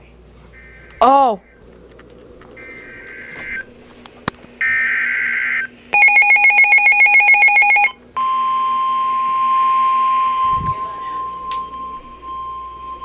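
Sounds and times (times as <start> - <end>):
steady warning alarm tone: 2.6 - 3.7, 4.6 - 13.0
pulsing electronic beep: 6.0 - 8.0.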